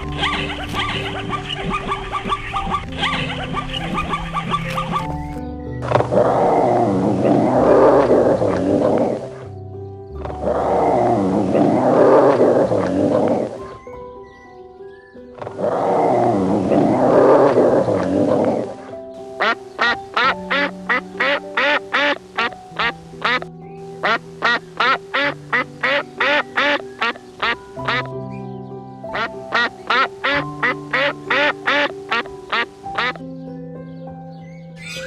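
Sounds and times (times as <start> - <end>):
rapid bird-like calls: 0.0 - 5.4, 19.2 - 28.1, 29.1 - 33.2
background music with low notes: 0.0 - 35.0.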